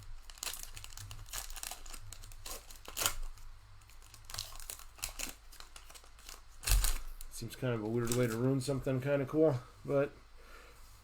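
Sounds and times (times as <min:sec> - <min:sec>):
card pack wrapper crinkling and tearing: 0:00.0 - 0:08.5.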